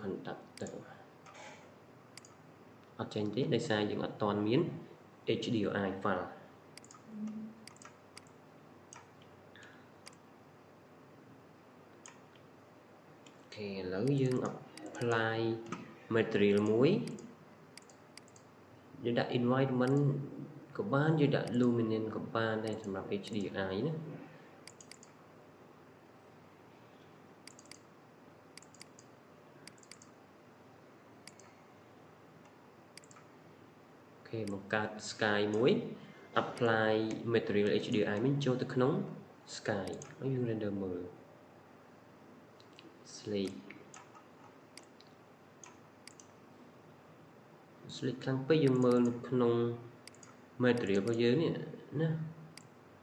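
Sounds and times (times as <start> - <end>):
faint background hiss: 0.0 - 53.0
computer mouse clicks: 0.6 - 2.4, 6.8 - 9.3, 10.0 - 10.2, 11.9 - 12.5, 13.2 - 15.9, 16.5 - 18.5, 22.7 - 23.5, 24.6 - 25.2, 27.4 - 27.9, 28.6 - 30.2, 31.2 - 31.6, 32.4 - 33.3, 39.8 - 40.2, 42.6 - 46.4, 48.6 - 49.2, 50.0 - 51.2, 52.5 - 52.8.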